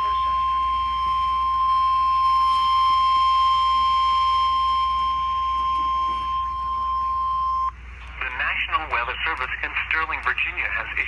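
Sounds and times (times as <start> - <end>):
steady high alarm tone: 0.0 - 7.8.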